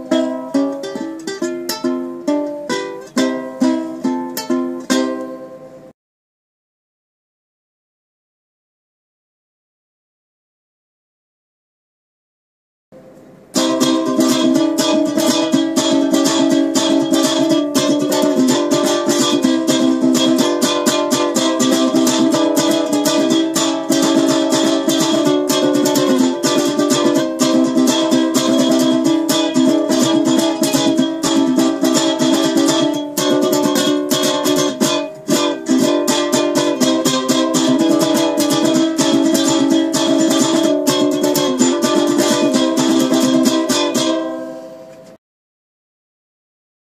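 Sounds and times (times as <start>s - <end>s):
ukulele strummed fast: 0.0s - 5.6s, 13.5s - 44.8s.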